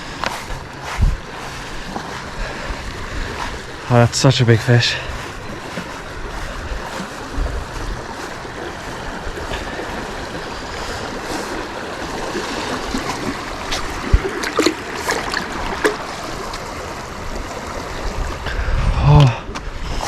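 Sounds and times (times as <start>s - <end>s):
fast-flowing river rushing: 0.0s - 18.6s
sharp knocks or splashes: 12.3s - 16.7s.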